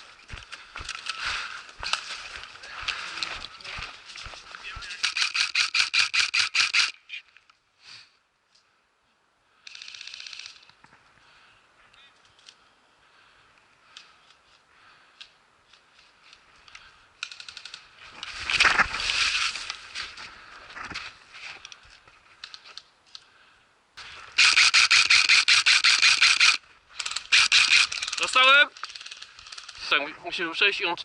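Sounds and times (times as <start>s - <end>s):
airsoft rifle automatic fire: 5.0s - 6.9s, 24.4s - 29.6s
faint clicks: 13.5s - 18.3s.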